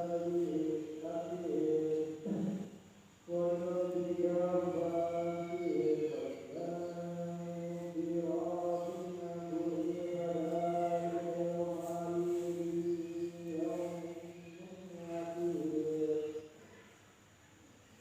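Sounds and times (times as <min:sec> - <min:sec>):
voices chanting: 0:03.3 - 0:16.6
faint high-pitched tone: 0:03.5 - 0:18.0.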